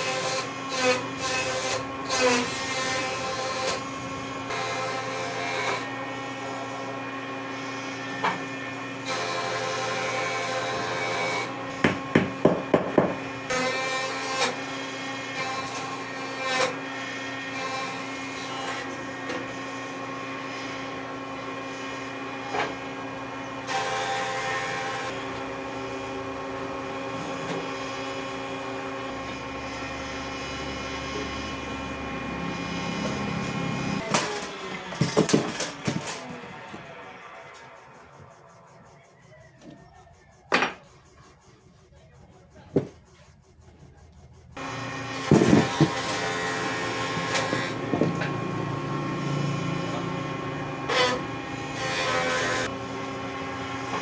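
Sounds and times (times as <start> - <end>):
hammer striking wood: 11.8 - 13.2
steady machine hum: 21.0 - 54.0.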